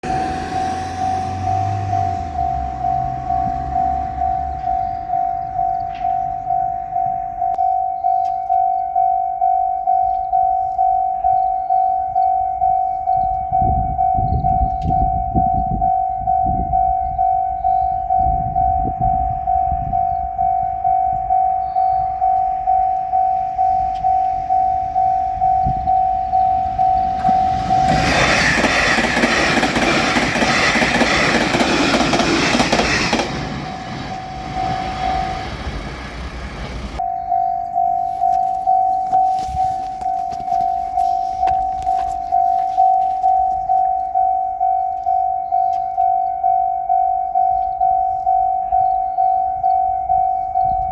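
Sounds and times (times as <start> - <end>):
train passing: 0.0 - 7.5, 22.2 - 44.2
level crossing bell ringing: 0.0 - 14.3, 19.0 - 50.9.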